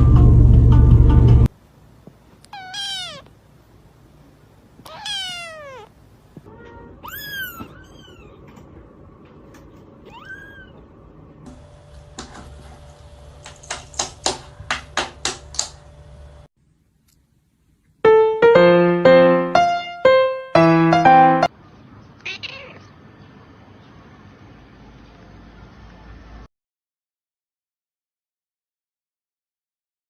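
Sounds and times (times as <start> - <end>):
cat meowing: 2.5 - 3.3, 4.8 - 8.5, 10.0 - 10.8, 22.2 - 22.9.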